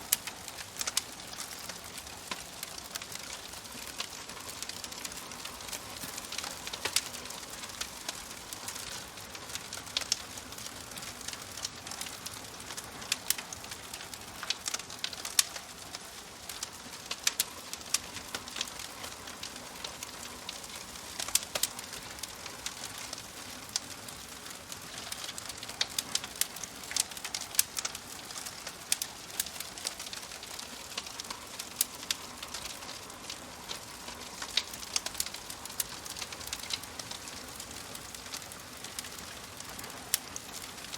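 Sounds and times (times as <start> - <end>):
wood fire crackling: 0.0 - 40.9.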